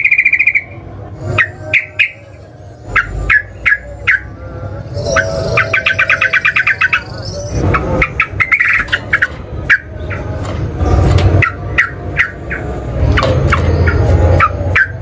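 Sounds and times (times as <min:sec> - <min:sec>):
bird song sharp chirping: 0:01.4 - 0:10.3.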